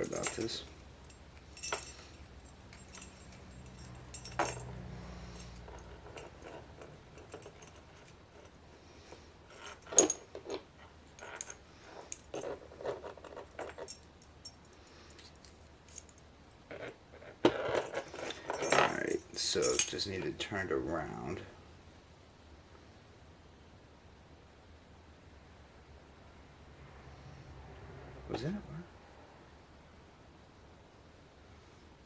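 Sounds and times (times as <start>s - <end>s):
padlock and key clinking: 0.0s - 8.6s, 9.4s - 16.9s, 17.7s - 20.1s.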